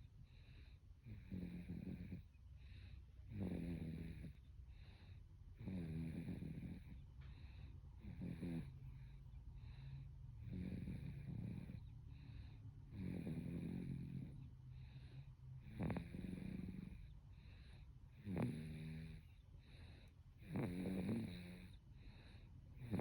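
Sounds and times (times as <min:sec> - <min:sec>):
baby snoring: 0:01.1 - 0:02.3, 0:03.2 - 0:04.4, 0:05.6 - 0:07.0, 0:08.0 - 0:08.8, 0:10.4 - 0:15.0, 0:15.6 - 0:23.0.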